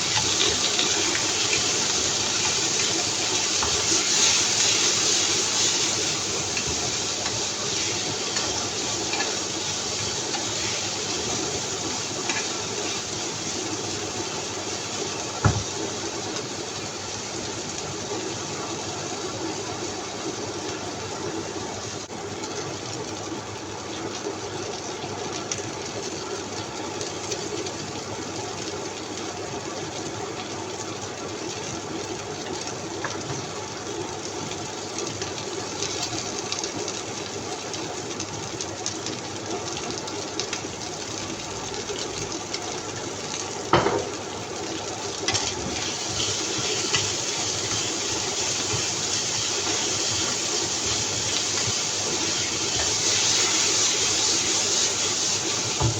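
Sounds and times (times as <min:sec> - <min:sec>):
food hissing on the stove: 0:00.0 - 0:55.9
utensil knocking on pan: 0:15.4 - 0:15.7.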